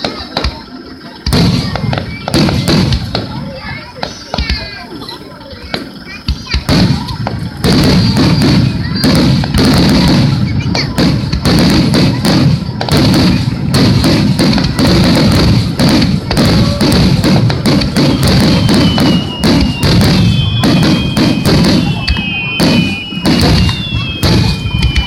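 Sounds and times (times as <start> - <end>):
fireworks booming and crackling: 0.0 - 25.0
descending whistling tones: 17.9 - 25.0.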